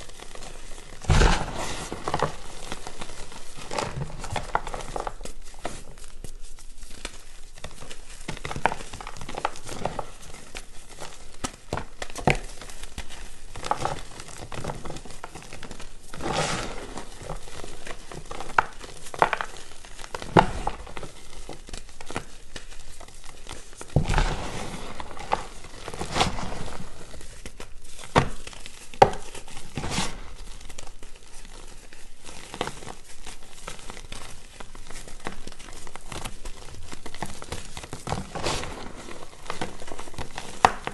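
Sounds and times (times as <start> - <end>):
chalk crunching: 0.0 - 11.4, 13.1 - 40.9.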